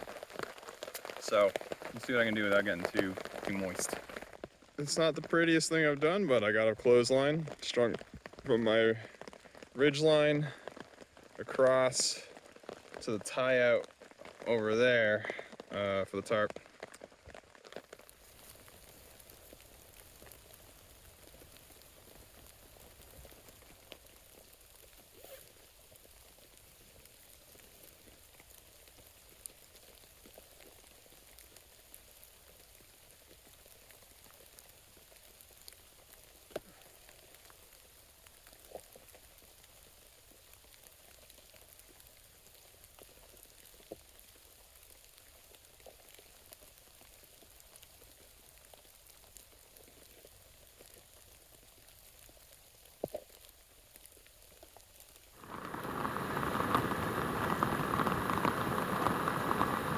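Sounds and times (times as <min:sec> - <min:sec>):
single raindrops: 0:00.0 - 0:14.6, 0:15.2 - 0:59.9
faint steady rain: 0:00.0 - 0:59.9.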